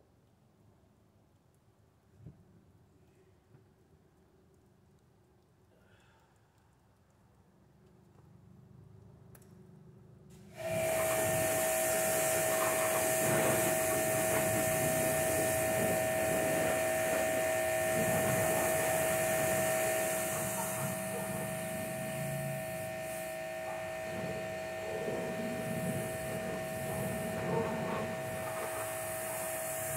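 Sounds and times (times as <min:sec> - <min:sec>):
pressure washer whine: 0:10.6 - 0:29.9
water spray hissing: 0:10.6 - 0:29.9.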